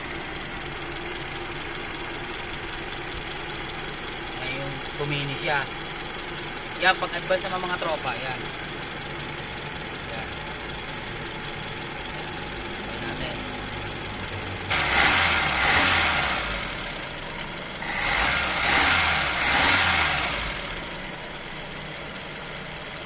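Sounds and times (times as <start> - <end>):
car engine idling and revving: 0.0 - 23.0.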